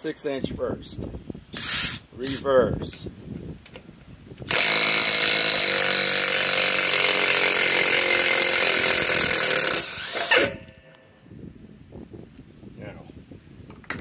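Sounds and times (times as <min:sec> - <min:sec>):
impact wrench hammering: 0:05.2 - 0:10.9.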